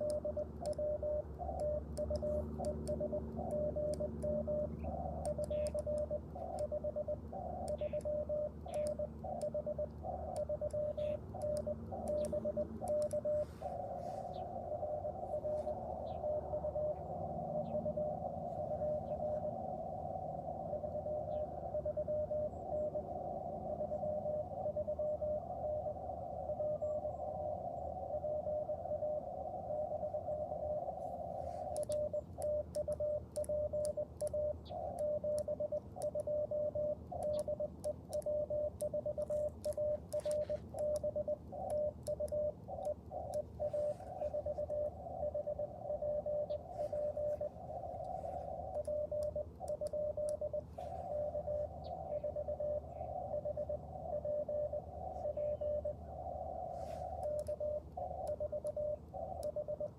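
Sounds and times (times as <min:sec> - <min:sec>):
light clicks: 0:00.0 - 0:13.8, 0:31.6 - 0:45.4, 0:46.1 - 0:52.0, 0:57.1 - 0:59.9
morse code tone: 0:00.0 - 0:27.2, 0:28.1 - 0:59.9
receiver hiss: 0:00.0 - 0:59.9.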